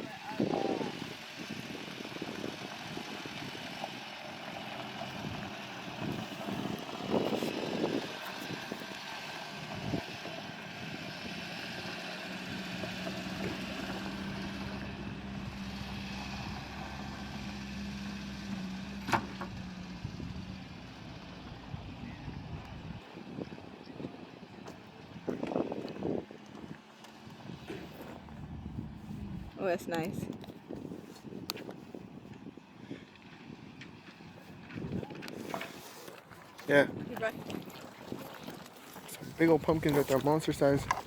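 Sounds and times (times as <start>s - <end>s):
vehicle engine idling: 0.0s - 29.7s.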